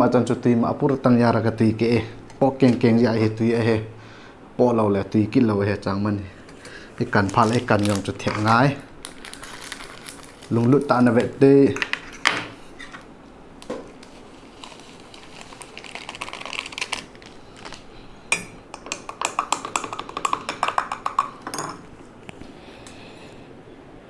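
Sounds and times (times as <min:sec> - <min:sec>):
tableware clinking: 0:21.4 - 0:21.9.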